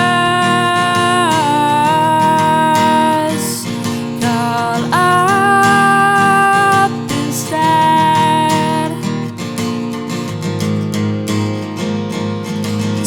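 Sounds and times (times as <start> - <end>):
woman singing long held notes: 0.0 - 9.0
strummed acoustic guitar: 0.0 - 13.0.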